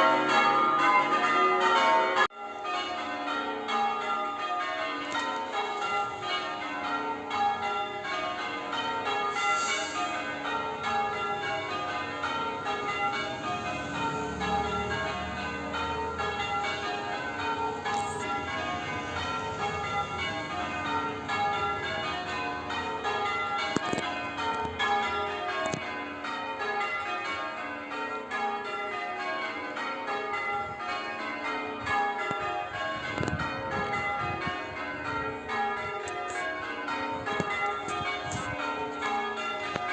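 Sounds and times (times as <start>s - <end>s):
church bells change ringing: 0.0s - 39.9s.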